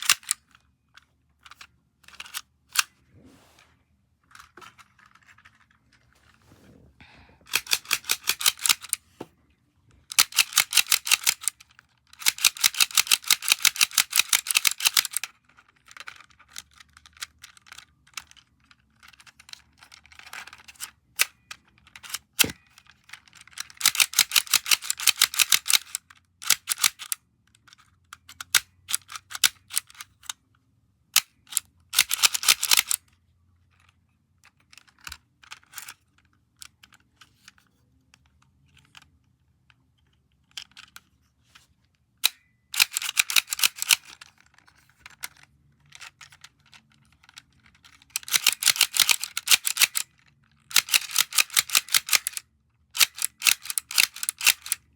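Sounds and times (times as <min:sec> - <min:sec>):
rapid clicking of fidget object: 0:07.5 - 0:09.0, 0:10.1 - 0:27.2, 0:31.2 - 0:33.0, 0:42.2 - 0:54.9.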